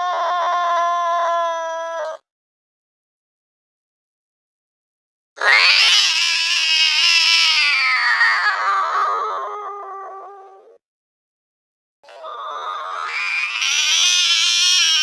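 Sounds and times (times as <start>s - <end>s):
slowed-down angry cat yowl: 5.4s - 10.6s.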